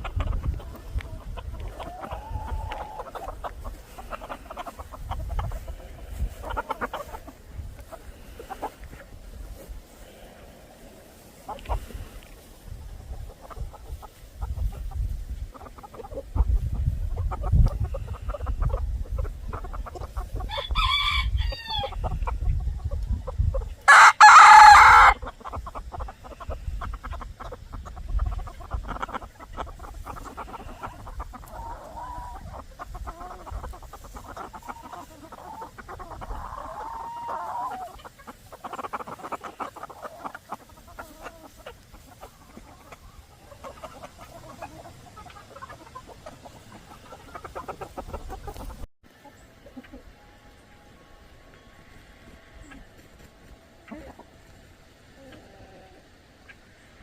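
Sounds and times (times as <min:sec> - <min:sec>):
chickens clucking: 0:00.0 - 0:57.0
rooster crowing: 0:20.5 - 0:21.9, 0:23.9 - 0:25.2.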